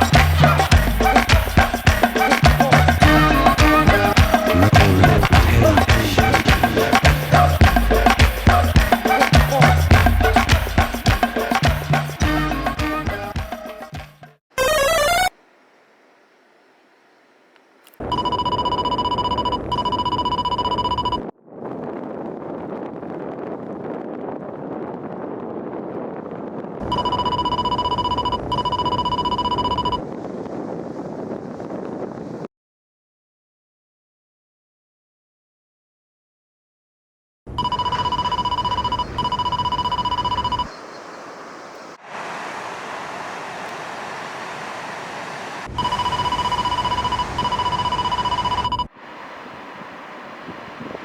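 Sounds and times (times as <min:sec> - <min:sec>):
wind on microphone: 0:00.0 - 0:12.5, 0:21.2 - 0:32.5, 0:37.8 - 0:51.0
low rumble: 0:04.5 - 0:08.7
pulsing electronic buzzer tone: 0:14.6 - 0:15.3, 0:26.8 - 0:30.0, 0:37.6 - 0:40.7, 0:45.7 - 0:48.9.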